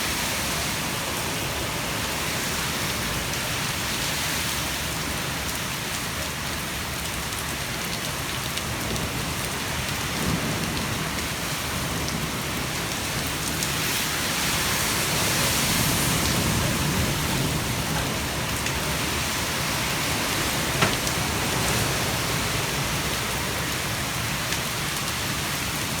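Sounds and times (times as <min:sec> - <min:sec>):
heavy rain: 0:00.0 - 0:26.0
gusting wind: 0:10.0 - 0:26.0.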